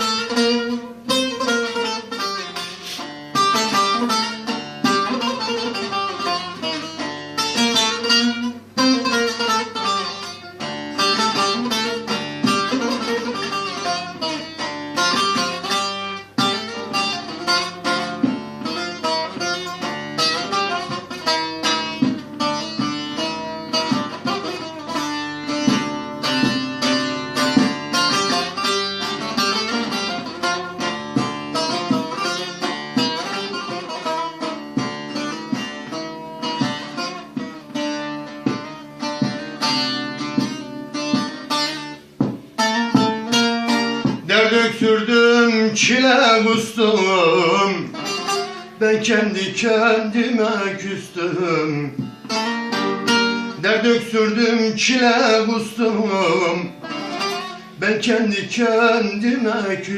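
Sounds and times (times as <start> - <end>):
plucked string instrument melody: 0.0 - 59.9.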